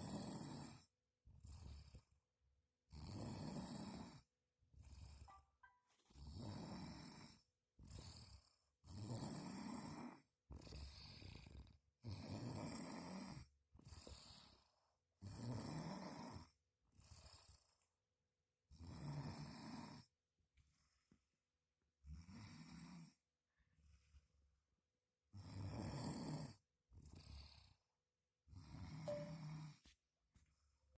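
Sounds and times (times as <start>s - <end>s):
person snoring heavily: 0.0s - 1.9s, 2.9s - 4.2s, 6.2s - 13.4s
quiet breath: 13.8s - 15.0s, 20.6s - 21.5s, 23.0s - 24.4s.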